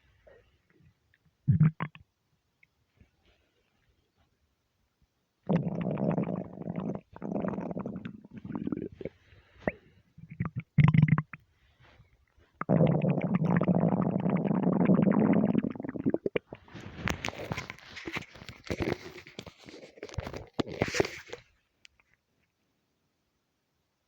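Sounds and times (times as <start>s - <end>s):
stomach rumbling: 0.4s - 2.1s, 5.5s - 11.4s, 12.5s - 21.5s.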